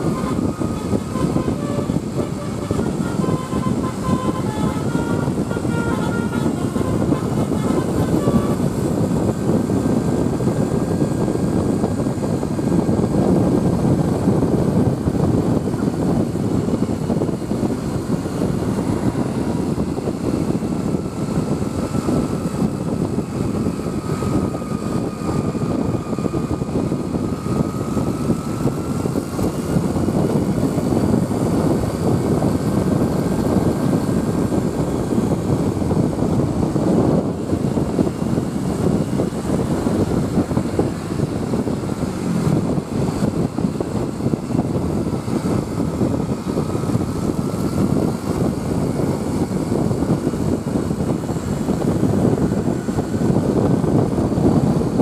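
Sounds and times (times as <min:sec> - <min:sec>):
faint whine: 0:00.0 - 0:55.0
rumbling vehicle noise: 0:00.0 - 0:55.0.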